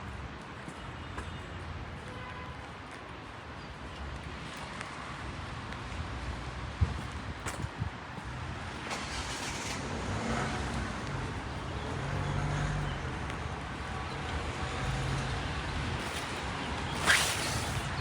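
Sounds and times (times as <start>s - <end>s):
car passing on wet street: 8.2s - 18.0s
rain hissing: 16.9s - 18.0s.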